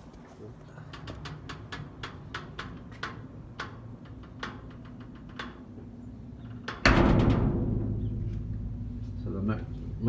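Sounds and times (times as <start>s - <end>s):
sharp clicks and light knocks: 0.1s - 6.9s
low hum: 6.9s - 10.0s.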